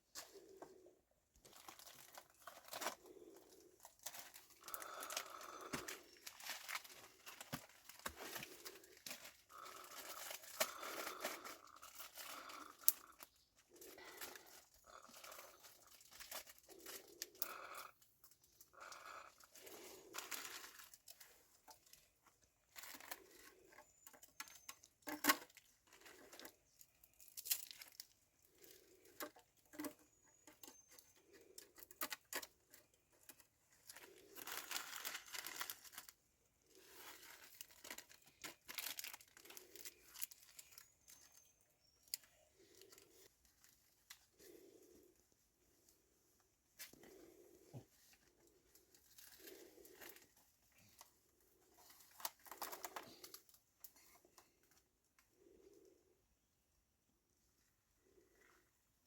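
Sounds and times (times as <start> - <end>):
material rustling and crinkling: 1.4 - 12.7, 33.3 - 54.8.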